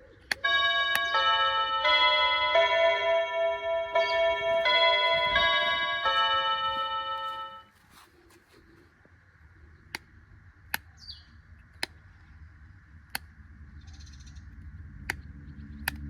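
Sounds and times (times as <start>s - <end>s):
high chirp: 0.4s - 7.6s
sharp clicks: 9.8s - 12.3s, 13.0s - 13.6s, 14.2s - 16.0s.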